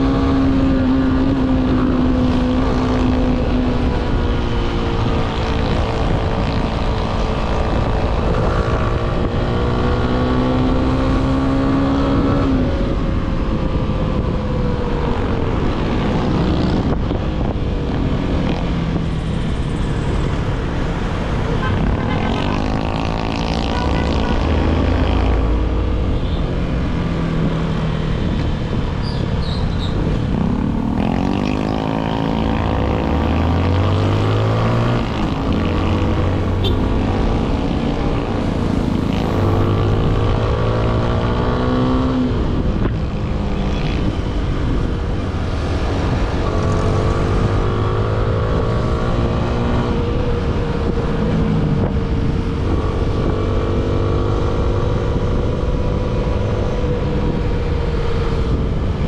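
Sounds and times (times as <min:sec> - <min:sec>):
wind and road noise: 0:00.0 - 0:59.0
motorcycle engine revving: 0:21.0 - 0:59.0.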